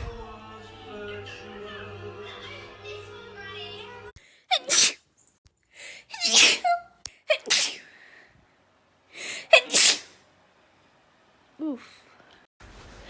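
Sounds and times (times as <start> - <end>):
woman sneezing: 4.5 - 5.0, 6.1 - 7.9, 9.4 - 10.2.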